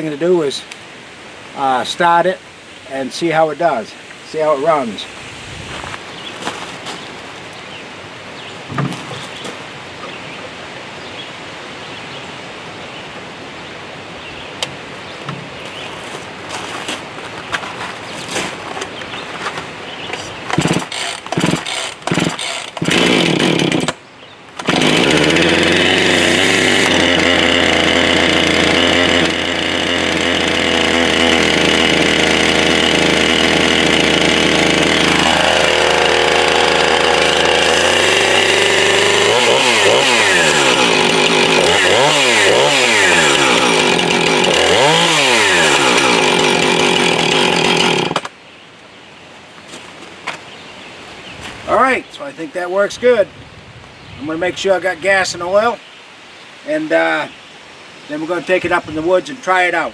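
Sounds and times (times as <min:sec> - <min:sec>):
chainsaw starting and revving: 0:20.4 - 0:24.0, 0:24.6 - 0:48.3.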